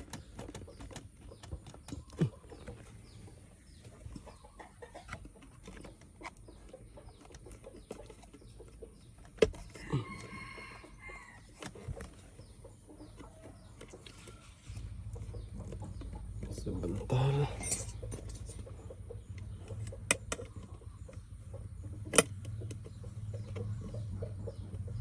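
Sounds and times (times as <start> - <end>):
rooster crowing: 9.8 - 11.4.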